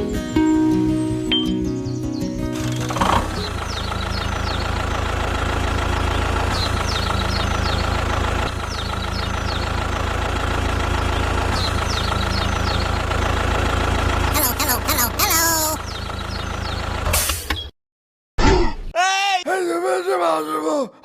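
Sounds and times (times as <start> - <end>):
small engine idling: 2.5 - 17.1.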